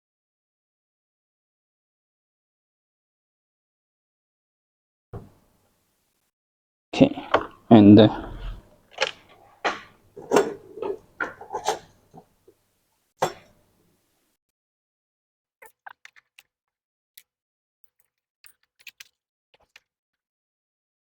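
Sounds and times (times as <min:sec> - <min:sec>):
plastic printer parts knocking: 0:09.0 - 0:12.0.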